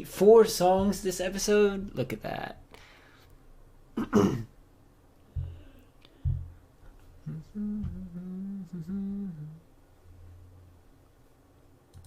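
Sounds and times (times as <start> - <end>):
person clearing throat: 4.0 - 4.5
dull low thumps: 5.3 - 9.6
person humming a tune: 7.2 - 9.7.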